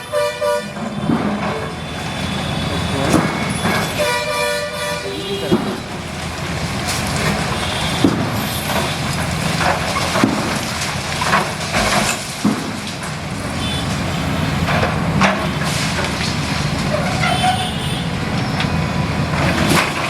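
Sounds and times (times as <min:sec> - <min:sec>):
diesel engine running: 0:00.0 - 0:20.0
building cracking and knocking: 0:05.5 - 0:13.5.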